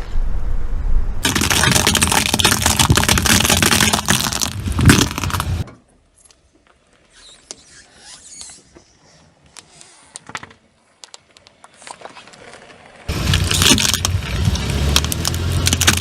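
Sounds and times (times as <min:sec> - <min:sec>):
tyre crushing objects: 0:01.2 - 0:05.6, 0:13.1 - 0:16.0
car engine humming: 0:13.1 - 0:16.0.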